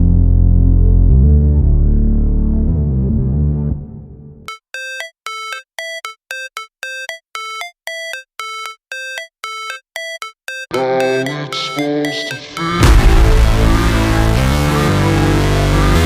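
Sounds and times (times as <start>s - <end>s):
ringtone-like synthesizer notes: 4.5s - 16.0s
background music track: 9.0s - 16.0s.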